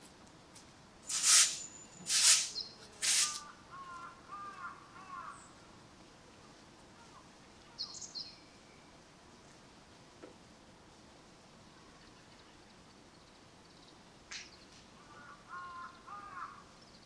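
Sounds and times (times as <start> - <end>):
crow cawing: 3.7 - 5.4, 15.0 - 16.6.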